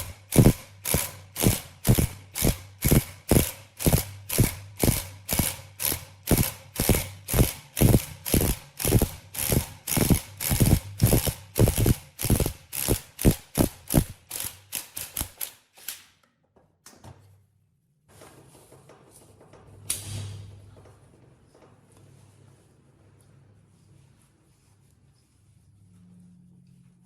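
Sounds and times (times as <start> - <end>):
hand tool strokes: 0.0 - 15.9.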